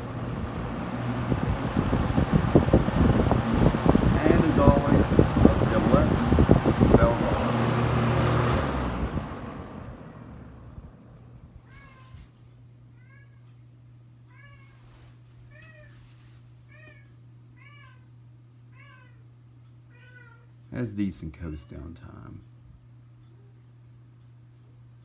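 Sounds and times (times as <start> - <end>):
box fan coasting down: 0.0 - 11.7
steady low hum: 0.0 - 25.0
cat meowing: 11.7 - 12.3, 14.3 - 14.8, 16.7 - 18.1, 19.9 - 20.5.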